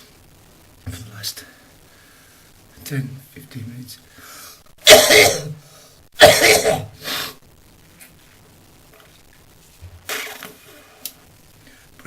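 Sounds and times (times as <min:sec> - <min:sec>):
man coughing: 0:04.9 - 0:05.5, 0:06.2 - 0:06.9.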